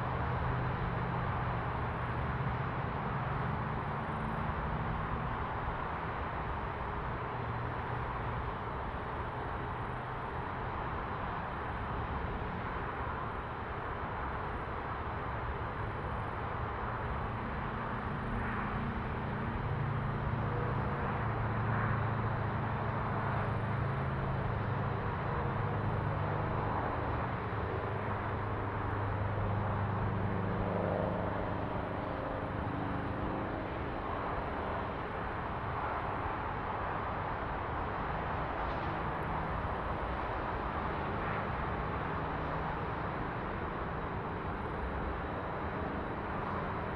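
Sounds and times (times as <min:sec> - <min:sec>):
traffic noise: 0:00.0 - 0:46.9.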